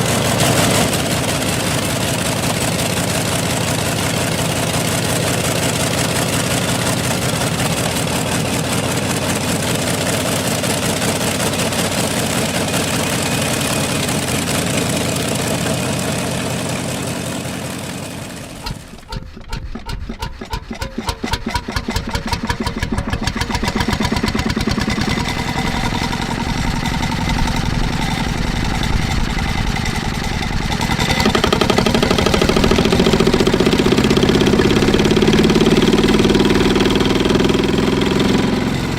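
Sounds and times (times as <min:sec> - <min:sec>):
old engine running: 0:00.0 - 0:38.9
old engine starting: 0:00.0 - 0:38.9.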